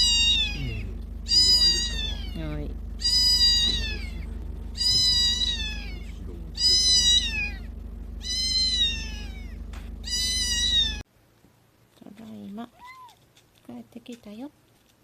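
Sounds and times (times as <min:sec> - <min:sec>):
kitten meowing: 0:00.0 - 0:11.0, 0:12.8 - 0:13.2.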